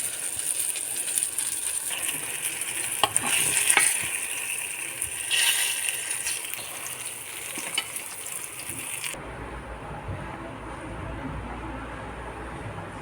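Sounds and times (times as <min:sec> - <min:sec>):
slices sizzling in hot oil: 0:00.0 - 0:09.2
low rumble: 0:09.2 - 0:13.0.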